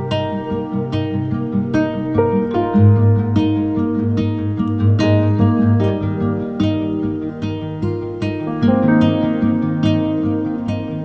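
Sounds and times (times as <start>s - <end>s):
gentle plucked-string music: 0.0s - 11.0s.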